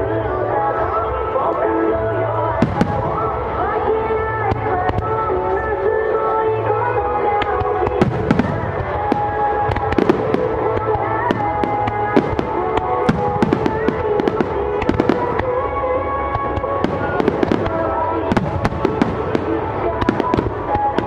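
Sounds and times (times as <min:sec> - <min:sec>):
music playing: 0:00.0 - 0:21.0
fireworks cracking and popping: 0:02.6 - 0:03.4, 0:07.3 - 0:21.0.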